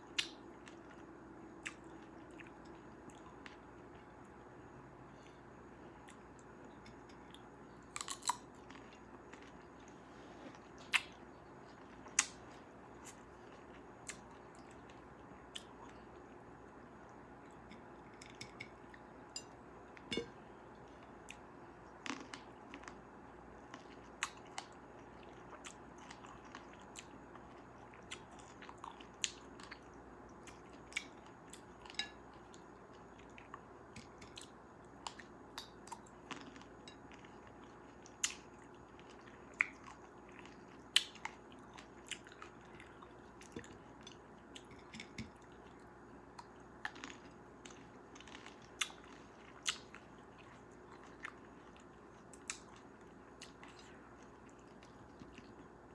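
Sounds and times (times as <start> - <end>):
person biting and chewing: 8.0 - 8.4.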